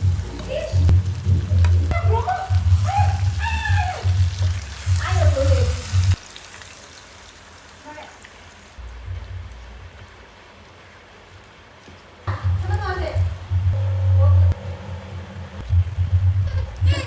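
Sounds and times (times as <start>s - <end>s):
food sizzling in hot oil: 0.0s - 10.2s.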